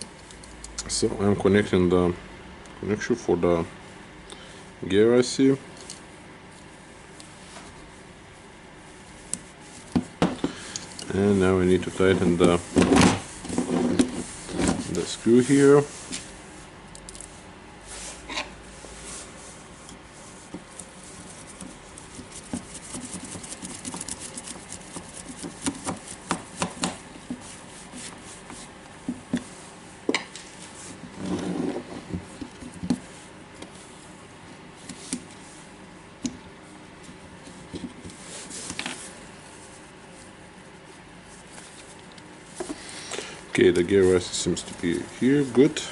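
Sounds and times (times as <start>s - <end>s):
scraping rub: 17.9s - 28.7s, 30.6s - 32.1s.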